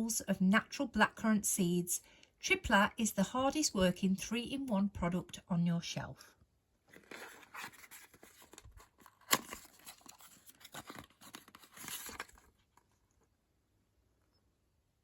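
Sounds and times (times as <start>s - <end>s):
packaging crinkling and tearing: 6.9s - 13.0s.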